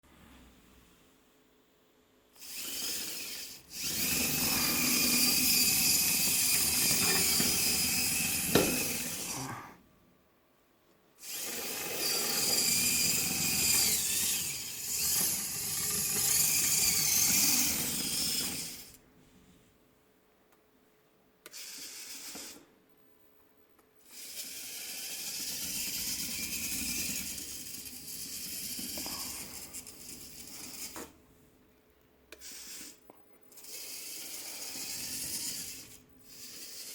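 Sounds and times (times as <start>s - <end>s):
servos and plastic gears whirring: 2.4s - 9.4s, 11.2s - 19.0s, 21.4s - 22.7s, 24.0s - 31.2s, 32.3s - 36.9s.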